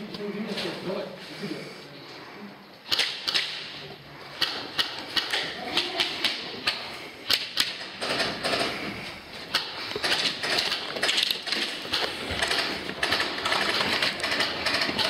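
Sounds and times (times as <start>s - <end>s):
airsoft guns firing: 2.9s - 3.8s, 4.4s - 8.9s, 9.5s - 15.0s.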